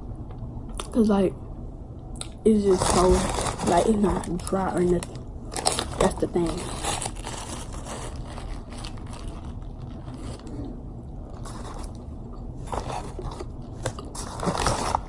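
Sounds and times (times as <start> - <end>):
person chewing: 6.6 - 15.0.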